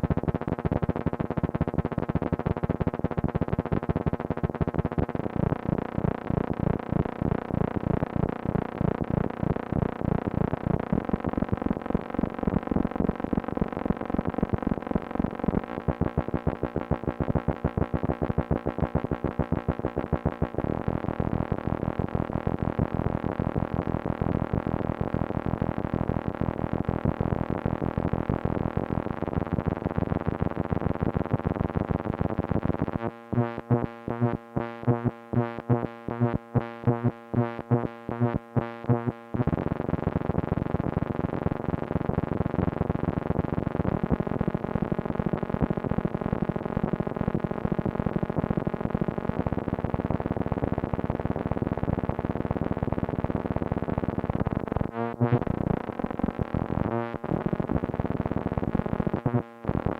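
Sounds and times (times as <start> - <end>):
synthesizer tone rich in overtones: 33.0 - 39.5.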